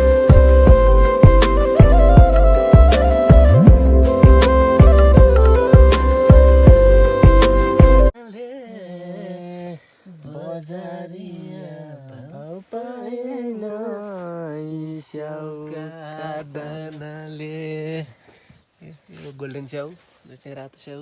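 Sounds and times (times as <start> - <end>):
loud music track: 0.0 - 8.1
person singing unaccompanied: 8.1 - 20.1.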